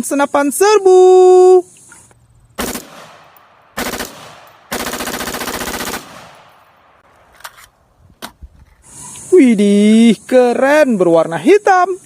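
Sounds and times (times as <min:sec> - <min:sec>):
toy rifle automatic fire: 0:02.6 - 0:06.5.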